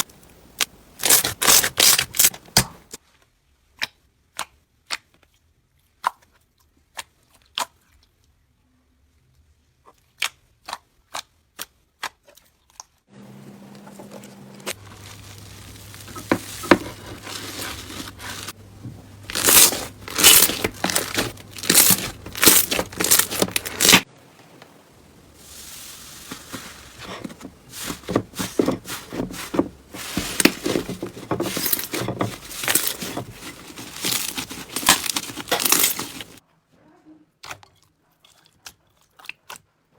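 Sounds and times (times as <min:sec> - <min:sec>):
crunchy slime crackling: 0:00.0 - 0:02.3, 0:14.7 - 0:24.1, 0:25.3 - 0:36.4.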